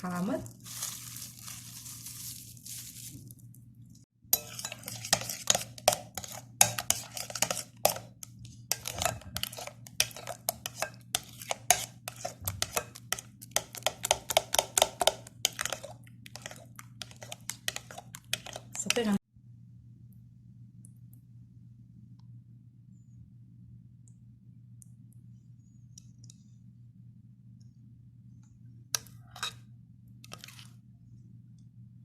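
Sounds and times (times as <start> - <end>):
spoon scraping a bowl: 4.4 - 19.2, 29.0 - 30.8.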